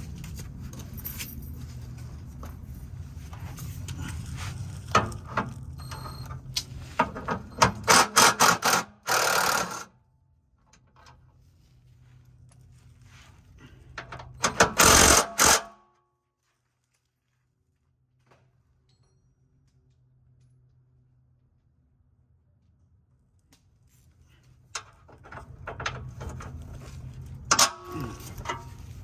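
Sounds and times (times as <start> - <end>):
power tool bursts: 7.7 - 9.9, 14.4 - 15.7.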